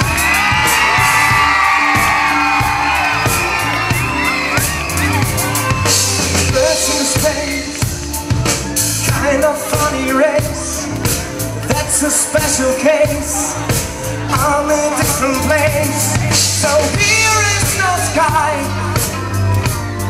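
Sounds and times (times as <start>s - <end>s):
audience cheering and whooping: 0.0s - 8.9s
drum kit and bass: 0.0s - 20.0s.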